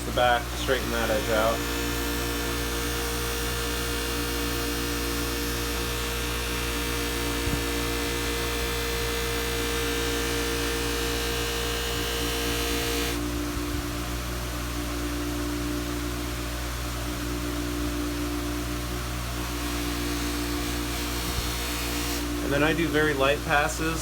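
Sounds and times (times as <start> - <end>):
blade polished on buffing wheel: 0.0 - 13.6, 19.4 - 24.0
bench buffer motor hum: 0.0 - 24.0.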